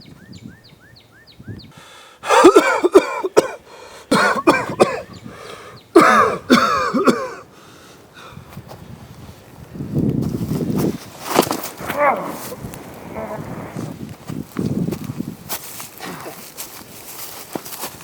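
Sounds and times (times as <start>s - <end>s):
man clearing his throat: 2.2s - 5.2s, 6.0s - 7.4s
man coughing: 2.2s - 5.2s, 6.0s - 7.5s.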